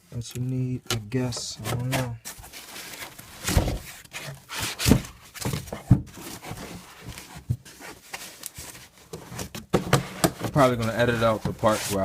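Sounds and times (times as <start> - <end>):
cardboard boxes being handled: 1.0 - 12.0
knocks on cardboard: 9.7 - 10.4.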